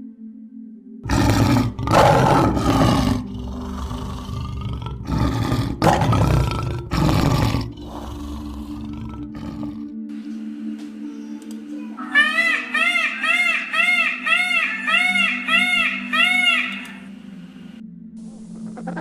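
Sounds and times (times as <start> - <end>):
large animal roaring: 1.0 - 10.0.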